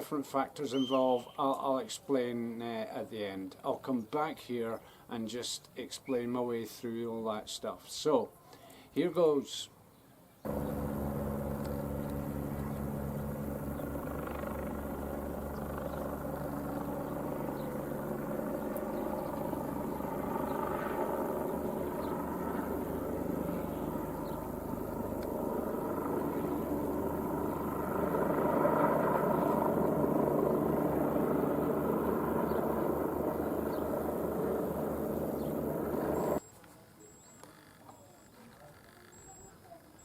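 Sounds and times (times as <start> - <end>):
helicopter rotor beating: 10.5 - 36.4.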